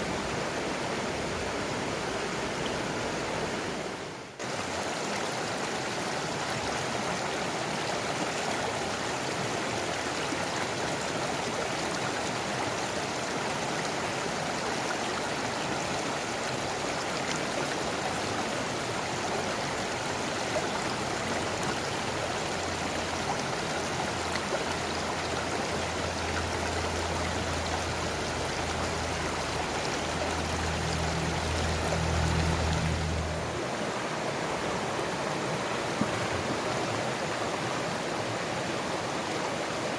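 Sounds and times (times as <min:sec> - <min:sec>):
stream rushing over rocks: 0:00.0 - 0:39.9
low hum: 0:27.6 - 0:33.6.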